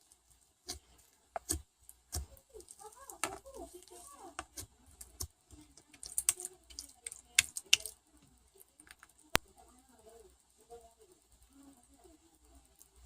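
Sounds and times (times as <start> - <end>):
sharp clicks and taps: 4.4 - 8.0.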